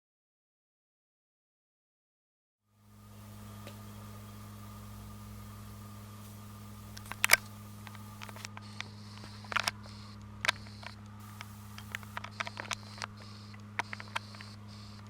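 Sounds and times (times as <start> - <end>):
steady low hum: 2.7 - 15.0
sharp clicks and taps: 7.0 - 15.0.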